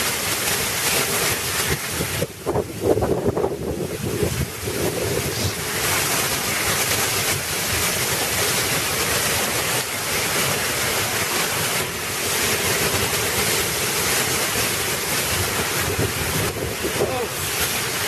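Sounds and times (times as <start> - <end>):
torrential rain pouring: 0.0 - 18.0
wind buffeting microphone: 1.6 - 8.1, 14.6 - 17.8.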